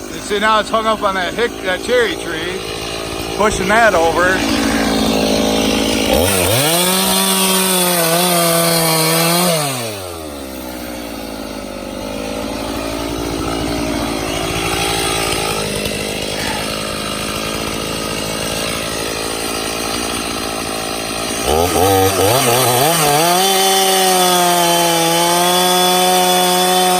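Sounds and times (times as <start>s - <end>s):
chainsaw revving: 0.0s - 26.9s.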